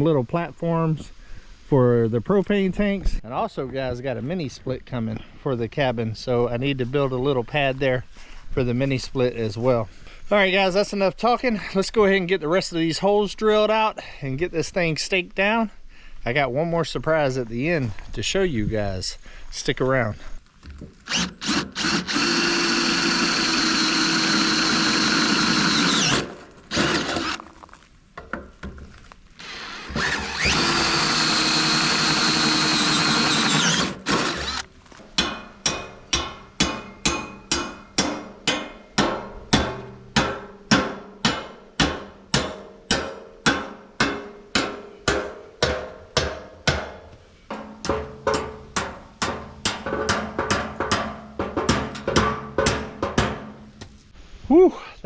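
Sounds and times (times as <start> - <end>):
power drill running: 21.0 - 27.4, 29.4 - 34.7.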